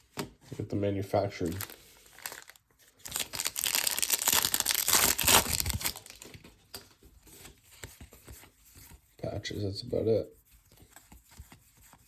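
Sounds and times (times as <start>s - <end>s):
foil wrapper crinkling and tearing: 1.4s - 6.4s.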